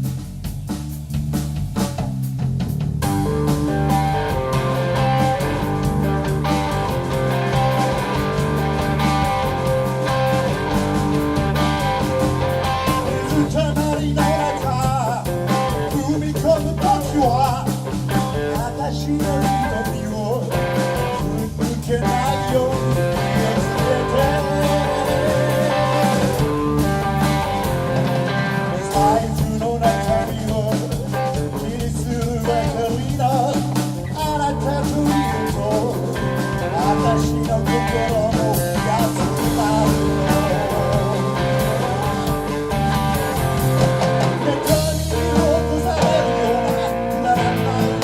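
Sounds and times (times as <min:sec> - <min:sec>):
live blues rock band: 0:00.0 - 0:48.0
person singing: 0:12.5 - 0:27.4, 0:28.1 - 0:48.0.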